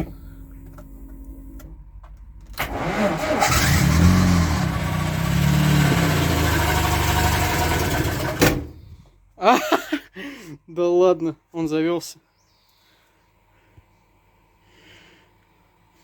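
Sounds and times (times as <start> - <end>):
engine running unevenly: 0.0 - 8.8
car engine cranking and starting: 0.0 - 8.9.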